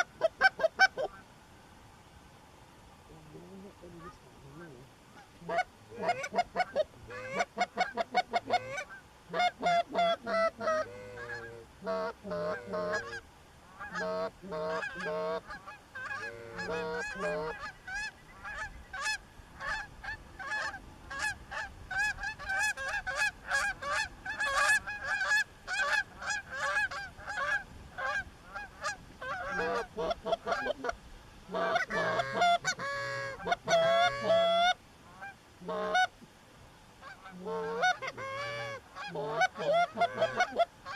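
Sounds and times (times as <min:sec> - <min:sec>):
goose clucking: 0:00.0 - 0:01.2, 0:03.2 - 0:36.2, 0:37.0 - 0:40.9
goose honking: 0:00.0 - 0:01.2, 0:03.2 - 0:36.2, 0:37.0 - 0:40.9.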